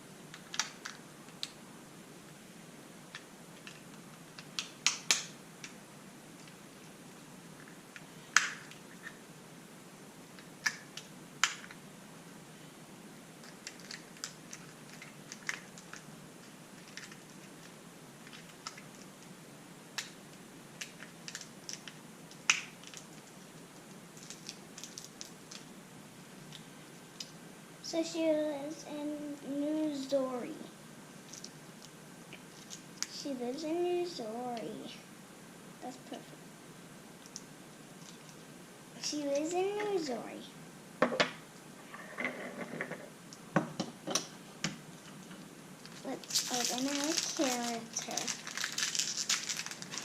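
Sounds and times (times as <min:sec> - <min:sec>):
plastic toy pieces clicking: 0:46.2 - 0:50.0.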